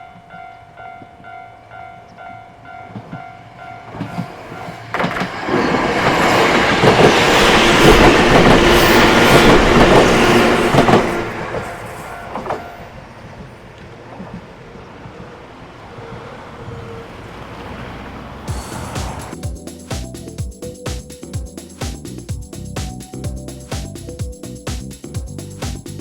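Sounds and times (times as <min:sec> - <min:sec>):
train wheels clattering over rails: 0:03.9 - 0:15.4, 0:18.4 - 0:19.4.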